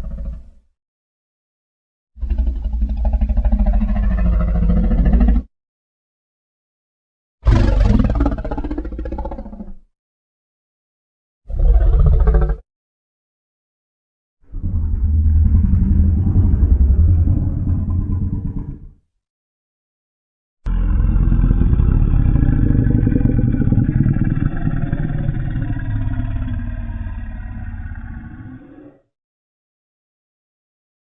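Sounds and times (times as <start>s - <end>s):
rough rumbling monster roar: 2.2s - 5.5s, 7.4s - 9.7s, 11.5s - 12.6s, 14.5s - 19.0s, 20.7s - 29.1s.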